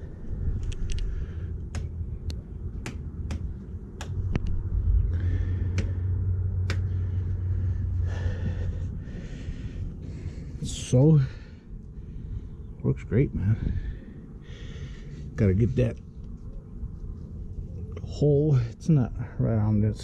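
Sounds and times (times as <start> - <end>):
sharp clicks and knocks: 1.7 - 4.6, 6.6 - 6.9.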